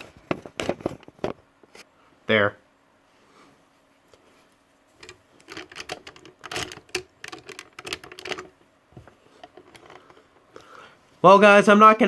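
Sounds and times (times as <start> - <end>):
plastic clicks and knocks: 5.0 - 10.2.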